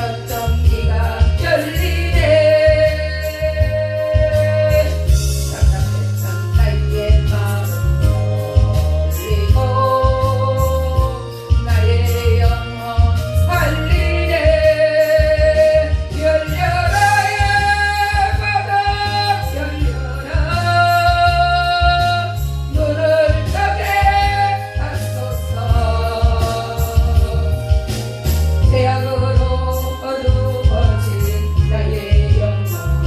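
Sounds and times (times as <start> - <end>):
bass and drum backing track: 0.0 - 33.0
person singing gospel song: 0.0 - 33.0.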